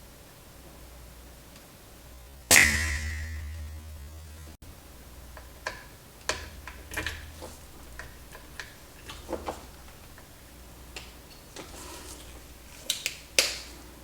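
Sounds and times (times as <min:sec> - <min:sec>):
steady low hum: 0:00.0 - 0:14.0
hand tools clicking and tapping: 0:04.9 - 0:14.0.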